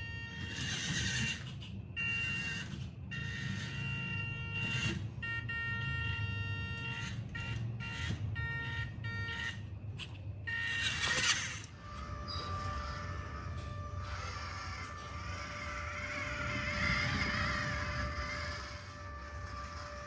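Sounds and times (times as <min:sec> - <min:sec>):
low drivetrain rumble: 0:00.0 - 0:20.0
electric motor whining: 0:10.5 - 0:20.0.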